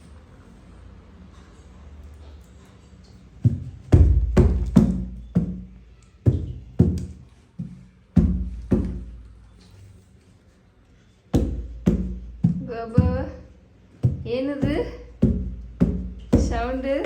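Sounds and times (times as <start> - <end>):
baby beating a drum by hand: 3.4 - 9.3, 11.4 - 13.4, 14.0 - 16.9.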